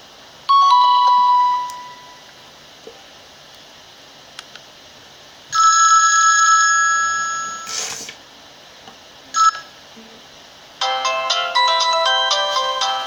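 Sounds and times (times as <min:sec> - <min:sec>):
bell-like ringtone: 0:00.5 - 0:02.2
short hiss: 0:07.6 - 0:08.2
ringtone melody of quick notes: 0:10.8 - 0:13.0.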